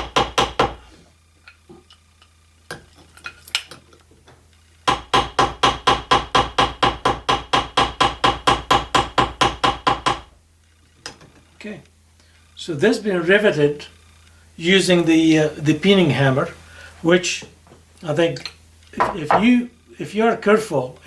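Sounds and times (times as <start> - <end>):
hammer striking copper rivets: 19.0 - 19.5.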